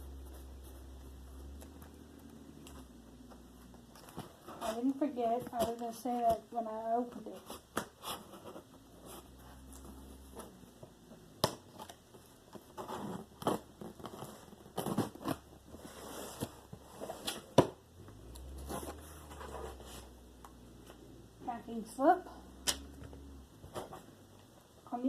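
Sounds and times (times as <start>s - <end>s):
cardboard crinkling and rustling: 0.2s - 10.6s, 11.7s - 17.6s
tape and cardboard tearing: 11.4s - 20.1s.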